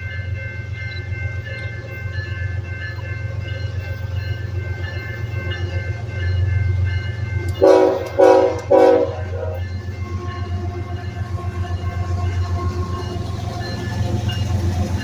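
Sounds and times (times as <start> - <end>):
diesel locomotive idling: 0.0 - 15.0
locomotive air horn blasts: 7.6 - 9.6.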